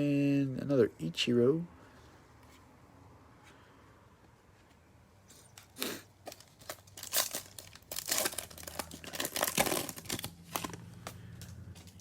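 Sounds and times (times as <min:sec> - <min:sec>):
wrapper crinkling and tearing: 0:06.2 - 0:12.0.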